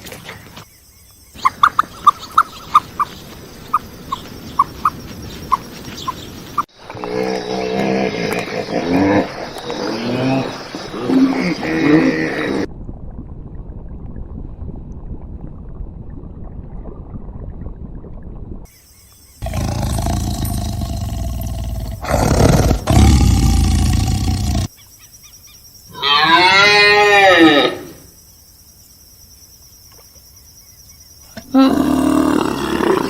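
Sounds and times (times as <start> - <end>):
rising and falling animal call: 25.9 - 27.9
rough noisy animal call: 25.9 - 28.0.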